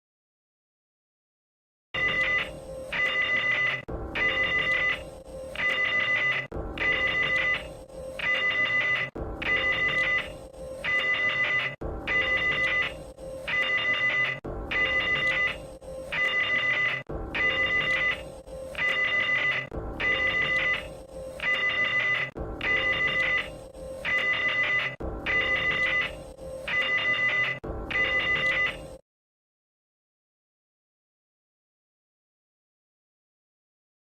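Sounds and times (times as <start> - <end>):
electronic alert beeps: 2.0 - 29.0
steady low hum: 2.2 - 29.0.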